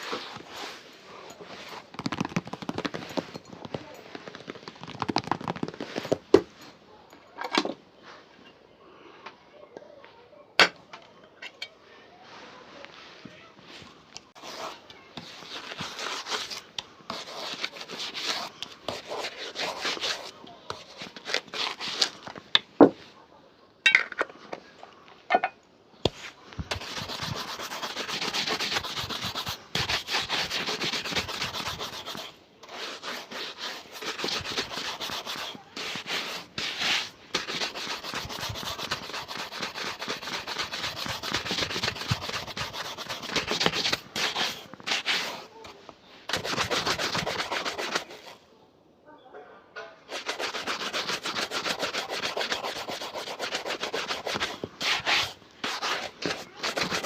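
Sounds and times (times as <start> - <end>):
brush rubbing on a shoe: 0.0 - 6.2, 14.4 - 22.2, 26.1 - 45.6, 46.3 - 48.4, 50.1 - 57.0.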